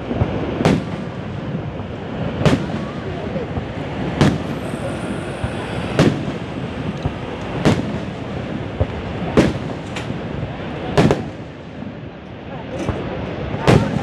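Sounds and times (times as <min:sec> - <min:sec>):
steady background noise: 0:00.0 - 0:14.0
fireworks shells bursting: 0:02.3 - 0:10.3.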